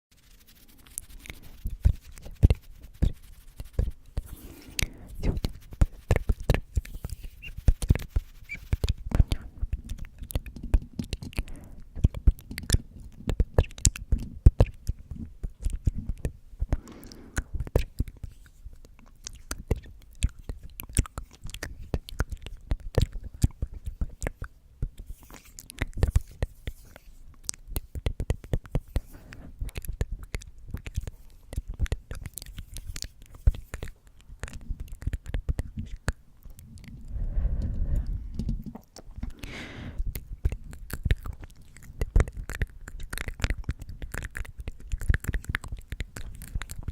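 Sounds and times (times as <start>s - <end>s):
soft whispering: 0.2s - 12.1s, 28.8s - 30.0s, 32.2s - 42.5s
mouth clicks: 27.4s - 46.9s.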